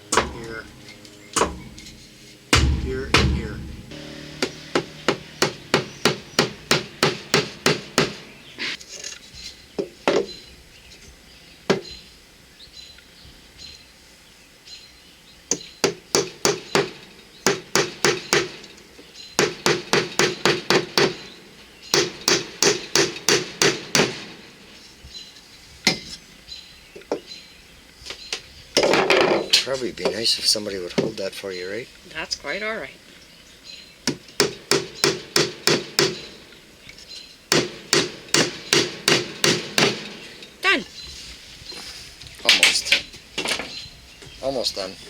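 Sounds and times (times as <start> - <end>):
hammer tapping nails into wood: 21.9 - 24.2.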